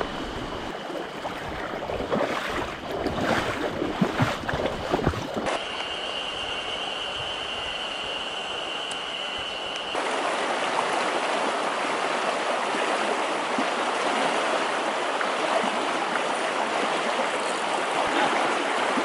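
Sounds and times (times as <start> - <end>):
water splashing and knocks: 0.0 - 5.6
stream water rushing: 0.0 - 19.0.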